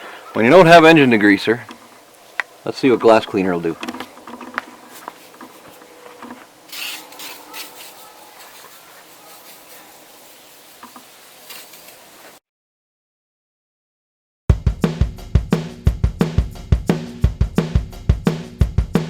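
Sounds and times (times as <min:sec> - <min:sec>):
rubbing and scrubbing: 0:04.0 - 0:12.4
spray hisses: 0:06.6 - 0:12.4.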